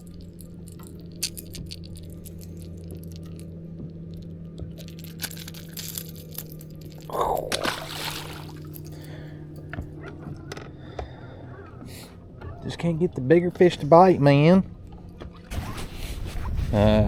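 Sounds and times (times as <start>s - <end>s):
low electric hum: 0.0s - 15.5s
water splash: 7.1s - 8.8s.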